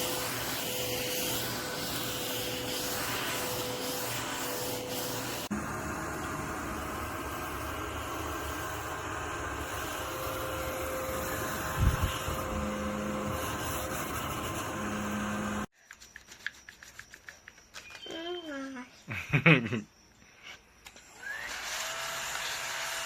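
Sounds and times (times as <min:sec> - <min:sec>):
small vacuum cleaner whirring: 0:00.0 - 0:15.7, 0:20.9 - 0:23.0.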